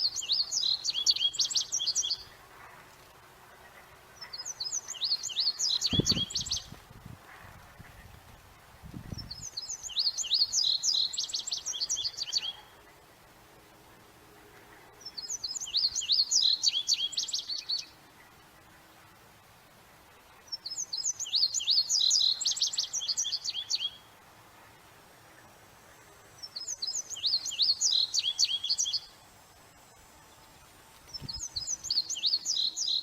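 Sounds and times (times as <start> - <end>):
bird singing: 0.0 - 2.5, 3.5 - 6.8, 9.0 - 13.0, 14.8 - 18.4, 20.2 - 24.1, 25.2 - 33.0.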